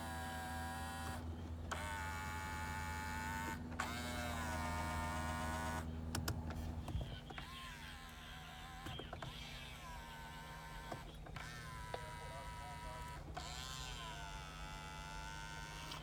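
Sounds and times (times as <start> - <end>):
electric mirror motors whirring: 0.0 - 16.0
steady low hum: 0.0 - 16.0
clicks: 6.1 - 7.2.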